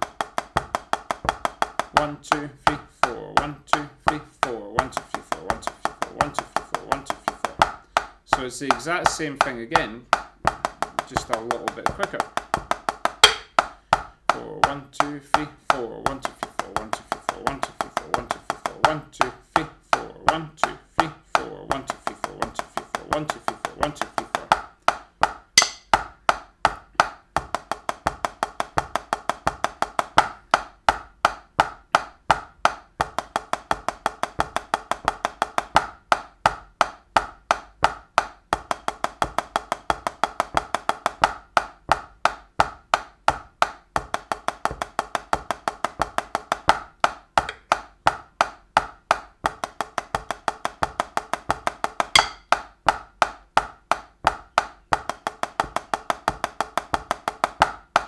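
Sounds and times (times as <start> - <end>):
drumsticks playing rapid strokes: 0.0 - 26.0, 49.8 - 52.6.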